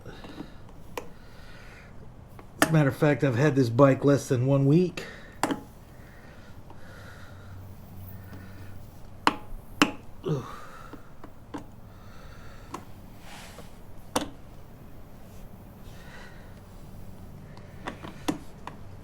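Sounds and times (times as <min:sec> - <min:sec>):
faint hum: 0:00.0 - 0:19.0
tools clicking and tapping: 0:02.4 - 0:02.8, 0:05.4 - 0:05.7, 0:08.3 - 0:10.2, 0:10.9 - 0:11.8, 0:12.7 - 0:12.9, 0:14.1 - 0:14.4, 0:17.6 - 0:18.9.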